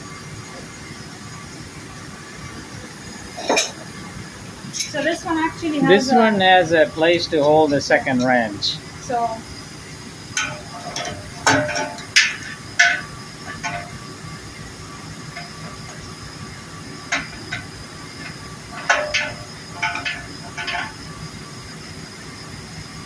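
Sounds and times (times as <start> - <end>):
steady background hum: 0.0 - 23.0
wrenches clanking on metal fitting: 3.4 - 3.8, 4.7 - 8.5, 10.4 - 14.2, 15.0 - 16.4, 17.0 - 21.2.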